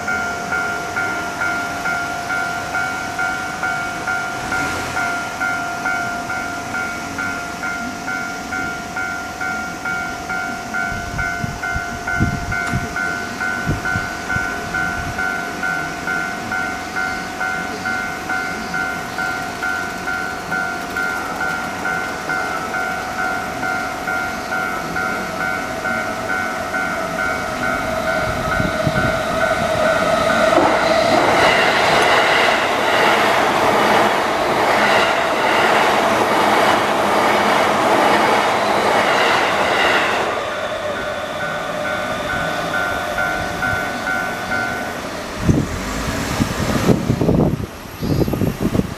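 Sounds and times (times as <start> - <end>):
level crossing bell dinging: 0.0 - 32.4, 40.6 - 45.1
train rail and wheel noise: 0.0 - 48.9.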